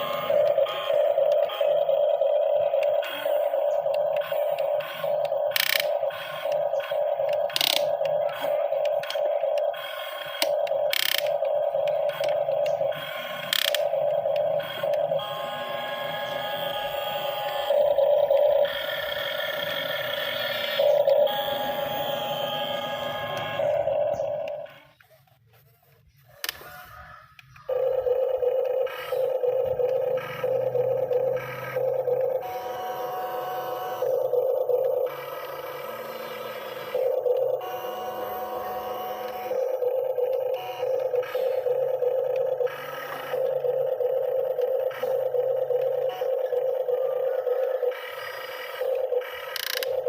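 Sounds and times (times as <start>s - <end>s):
low hum: 0.0s - 25.4s, 27.6s - 50.0s
electric motor and pump whining: 0.0s - 50.0s.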